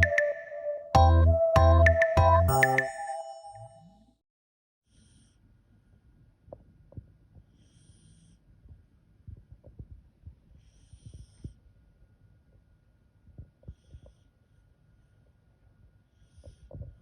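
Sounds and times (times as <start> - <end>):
dog snoring softly: 7.4 - 8.6, 10.5 - 11.7, 13.4 - 15.4, 16.0 - 17.0.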